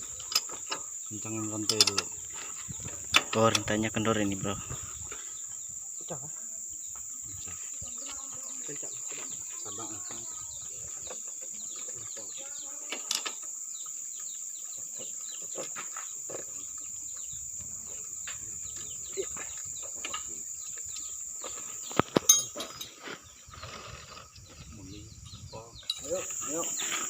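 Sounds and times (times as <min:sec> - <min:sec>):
high insect drone: 0:00.0 - 0:27.0
metallic clinks and taps: 0:22.2 - 0:22.9.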